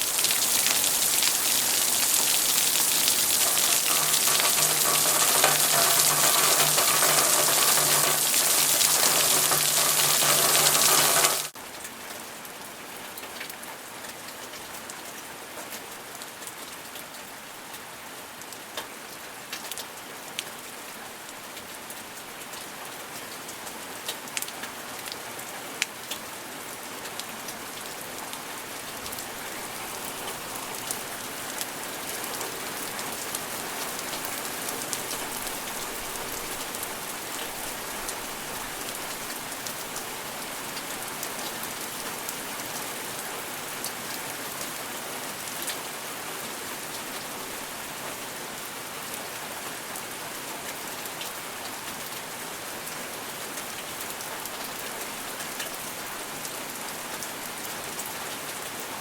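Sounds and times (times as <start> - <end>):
raindrops ticking on hard surface: 0.0 - 11.5
steady rain hiss: 0.0 - 11.6.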